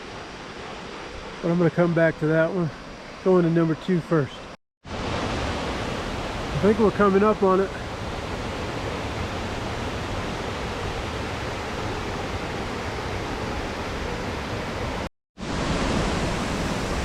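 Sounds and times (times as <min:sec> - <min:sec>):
waterfall rushing: 0:04.9 - 0:17.0.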